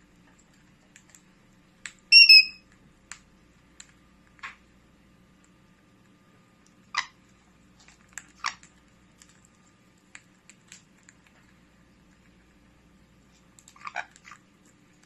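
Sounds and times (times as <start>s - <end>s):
parrot harsh calls: 2.1s - 2.6s.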